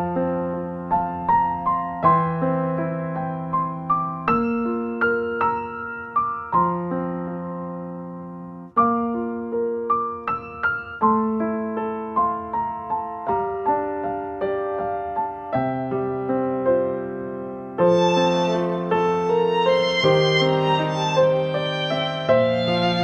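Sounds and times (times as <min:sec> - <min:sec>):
gentle piano piece: 0:00.0 - 0:23.0.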